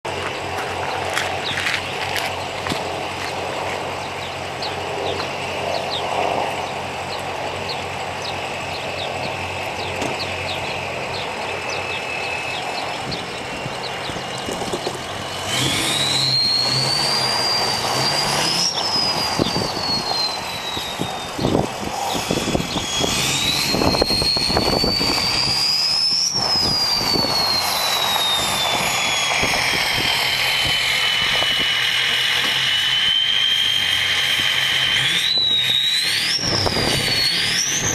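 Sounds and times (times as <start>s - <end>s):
diesel engine running: 0.0s - 37.9s
turbo whistle: 15.3s - 37.9s.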